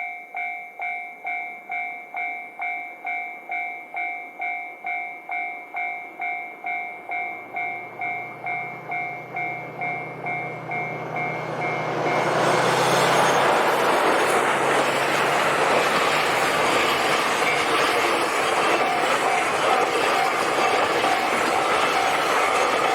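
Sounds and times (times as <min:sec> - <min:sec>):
level crossing bell ringing: 0:00.0 - 0:12.3, 0:17.5 - 0:22.9
train wheel noise: 0:05.3 - 0:22.9
diesel train engine hum: 0:06.0 - 0:22.9.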